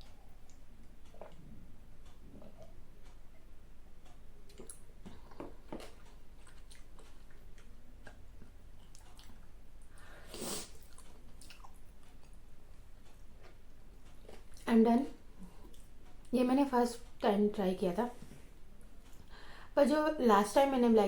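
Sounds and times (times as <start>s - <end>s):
chewing noodles: 0.0s - 1.5s, 4.5s - 9.6s, 10.2s - 12.4s
wet mouth clicks: 4.5s - 8.2s.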